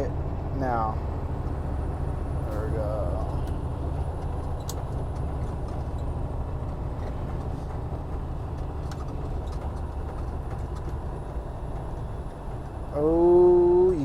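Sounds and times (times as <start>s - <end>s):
truck engine brake rumbling: 1.1s - 13.0s
light clicks and rattles: 2.5s - 12.9s.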